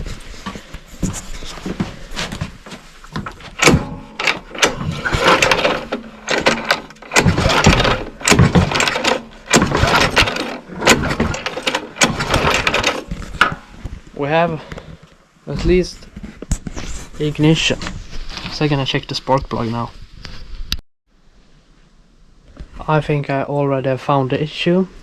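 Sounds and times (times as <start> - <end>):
recoil starter pulled: 3.2 - 13.7
engine cranking without catching: 3.6 - 13.7.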